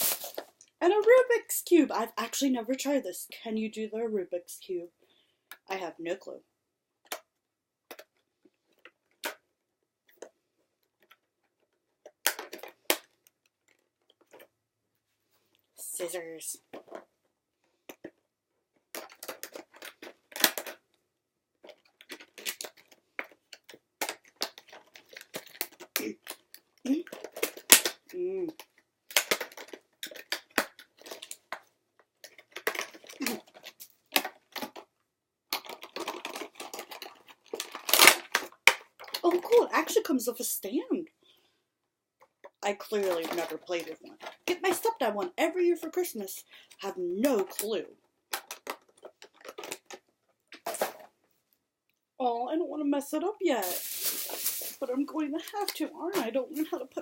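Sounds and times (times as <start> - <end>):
puzzle cube clicks and taps: 12.0 - 13.4, 21.6 - 34.9, 35.5 - 40.0.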